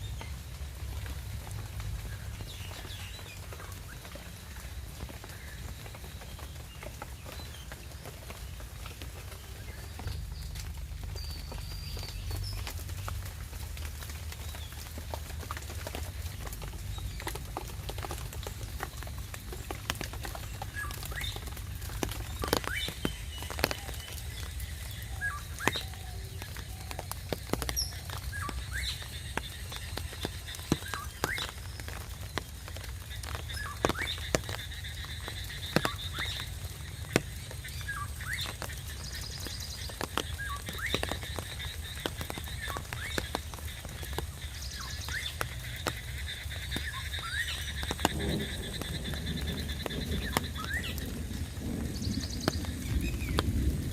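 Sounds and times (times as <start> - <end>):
rain drops striking: 0.0 - 53.9
low steady rumble: 9.6 - 20.8.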